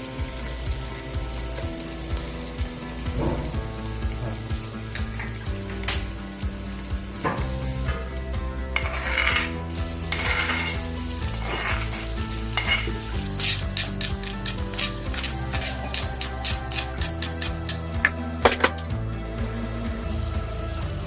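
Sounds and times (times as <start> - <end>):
food sizzling in a pot: 0.0 - 21.0
metal spoon scraping a pot: 8.7 - 18.8
spoon clinking against pot: 11.5 - 18.8.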